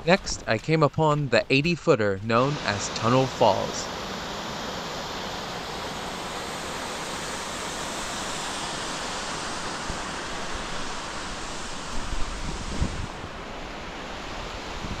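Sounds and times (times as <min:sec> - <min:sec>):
waterfall roaring: 0:00.0 - 0:15.0
wind thumps on microphone: 0:12.0 - 0:13.2.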